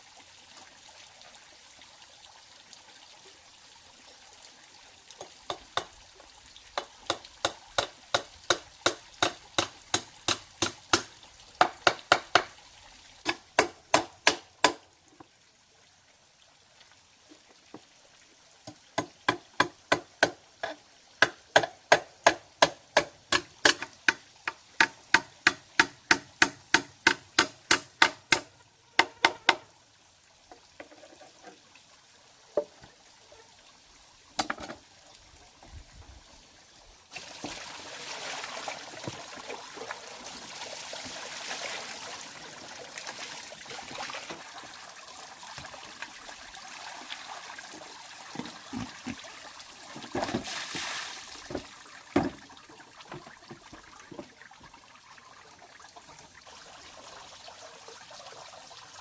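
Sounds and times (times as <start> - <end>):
water trickling: 28.2 - 59.0.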